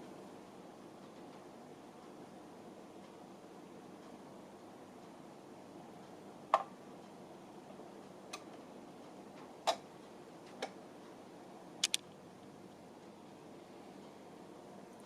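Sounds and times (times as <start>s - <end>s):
turntable mechanism clicking: 11.8s - 12.1s.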